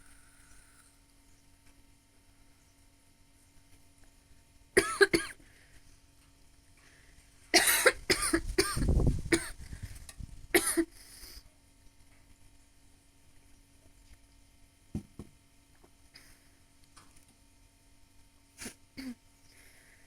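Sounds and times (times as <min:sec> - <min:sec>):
woman coughing: 0:04.8 - 0:05.4, 0:07.6 - 0:09.6, 0:10.6 - 0:10.9, 0:19.0 - 0:19.2
breaths: 0:05.4 - 0:05.9, 0:06.8 - 0:07.4, 0:10.9 - 0:11.5, 0:16.1 - 0:16.7, 0:19.4 - 0:20.0.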